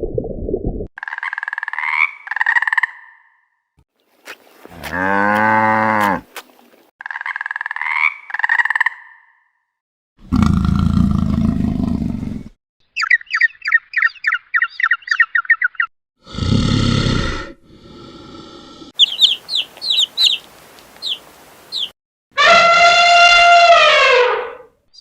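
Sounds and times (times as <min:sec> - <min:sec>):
low rough animal call: 0:04.4 - 0:06.7
bird's sharp falling chirps: 0:19.0 - 0:21.9
fast chirps: 0:19.0 - 0:22.0.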